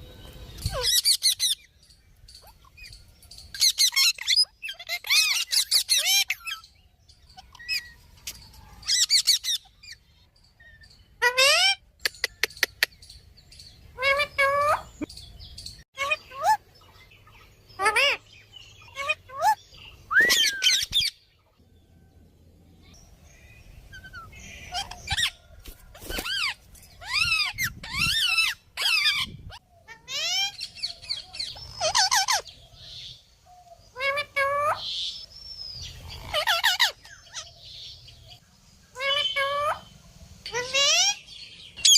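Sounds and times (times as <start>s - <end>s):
parrot calling and chattering: 0.6s - 1.7s, 2.3s - 15.3s, 16.0s - 19.6s, 26.2s - 32.6s, 33.8s - 35.2s, 36.0s - 38.0s, 38.9s - 41.9s.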